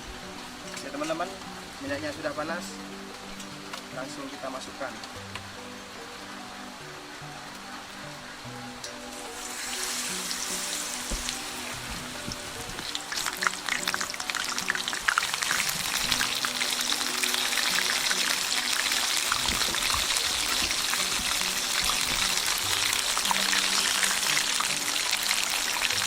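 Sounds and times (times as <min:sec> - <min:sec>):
food deep-frying in oil: 0:08.2 - 0:26.0
oil crackling and popping: 0:08.8 - 0:26.0.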